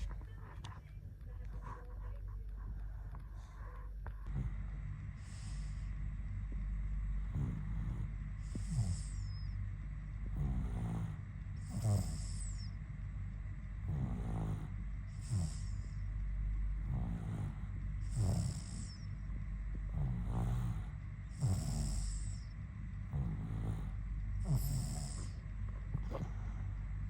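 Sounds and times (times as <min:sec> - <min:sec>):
person snoring: 0:04.2 - 0:06.0, 0:07.1 - 0:09.6, 0:10.2 - 0:12.7, 0:13.8 - 0:16.0, 0:16.8 - 0:19.1, 0:19.9 - 0:25.4.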